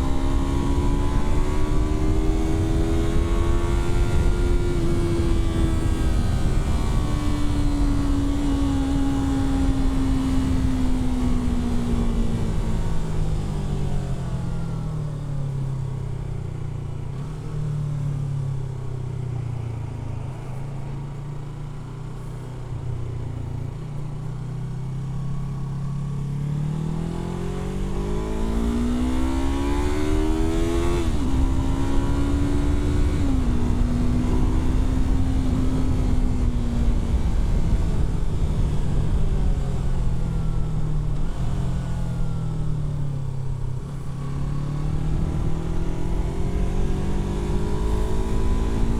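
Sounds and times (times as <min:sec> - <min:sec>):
wind noise: 0:00.0 - 0:13.9, 0:27.1 - 0:42.0
motorcycle engine revving: 0:00.0 - 0:14.6, 0:24.8 - 0:48.9.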